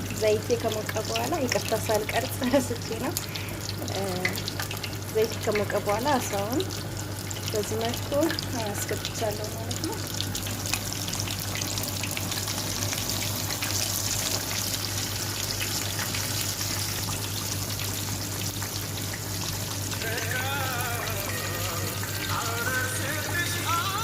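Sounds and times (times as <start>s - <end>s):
fish frying in hot oil: 0.0s - 24.0s
music: 20.0s - 24.0s.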